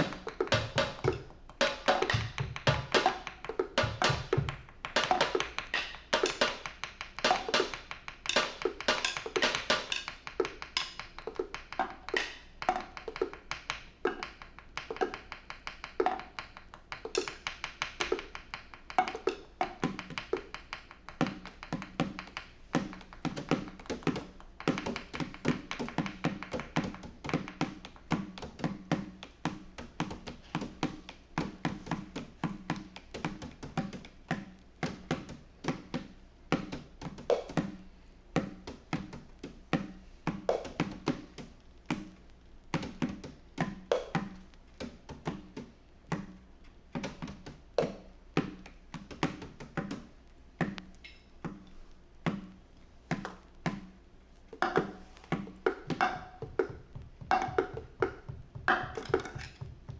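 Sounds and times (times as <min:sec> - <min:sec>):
dry taps and clicks: 0:04.4 - 0:37.7.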